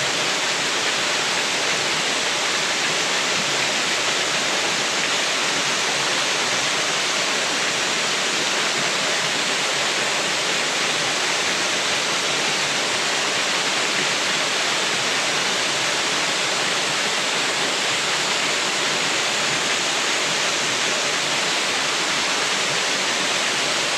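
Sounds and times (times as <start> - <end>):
small waterfall rushing: 0.0 - 23.9.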